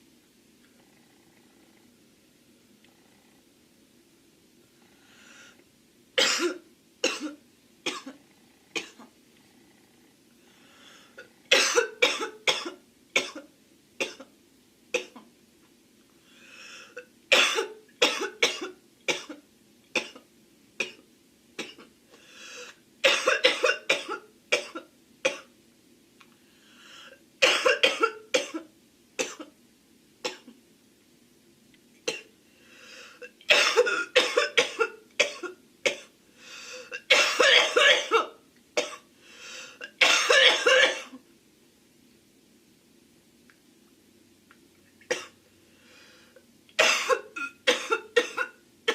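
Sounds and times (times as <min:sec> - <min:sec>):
drawn-in breaths: 0:04.8 - 0:05.7, 0:10.4 - 0:11.2, 0:16.2 - 0:17.0, 0:22.1 - 0:22.8, 0:26.4 - 0:27.2, 0:32.4 - 0:33.2, 0:36.3 - 0:37.0, 0:39.2 - 0:39.8, 0:45.6 - 0:46.4
girl coughing: 0:06.2 - 0:08.2, 0:11.5 - 0:13.4, 0:17.3 - 0:19.4, 0:23.0 - 0:25.5, 0:27.4 - 0:29.5, 0:33.5 - 0:36.1, 0:36.9 - 0:39.0, 0:39.9 - 0:41.2, 0:46.8 - 0:48.9.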